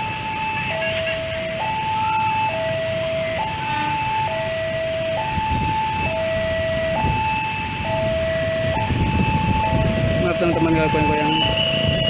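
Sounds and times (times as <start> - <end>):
level crossing two-tone alarm: 0.0 - 12.0
wind rumble on microphone: 4.8 - 12.0.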